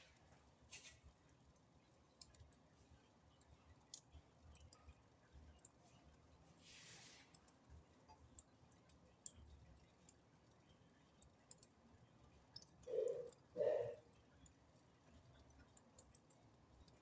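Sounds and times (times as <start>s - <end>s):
fire crackling in fireplace: 0.0s - 17.0s.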